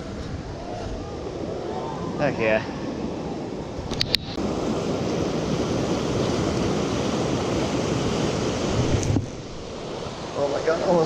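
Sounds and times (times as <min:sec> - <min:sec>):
river rapids rushing: 0:04.4 - 0:11.0.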